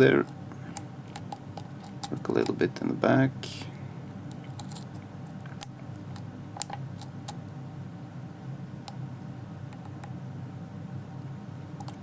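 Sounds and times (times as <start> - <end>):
steady low hum: 0.0 - 12.0
lock pick clicking against pins: 11.8 - 12.0.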